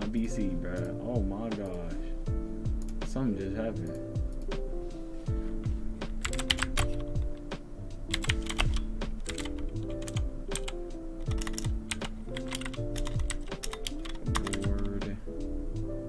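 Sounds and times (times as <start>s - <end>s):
background music with steady beat: 0.0s - 16.0s
clicky mechanical keyboard presses: 6.2s - 7.4s, 8.1s - 10.7s, 11.3s - 15.0s.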